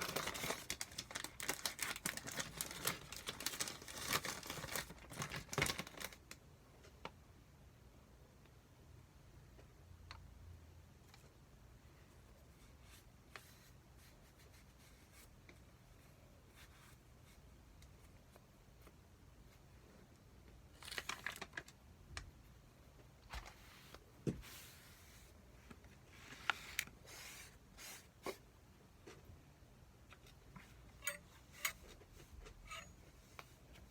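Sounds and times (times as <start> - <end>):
plastic packaging crinkling and tearing: 0.0 - 6.4, 20.7 - 21.8.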